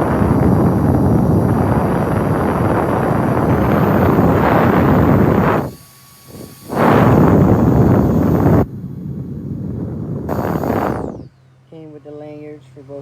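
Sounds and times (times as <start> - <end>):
handheld fan rushing air: 0.0 - 11.4.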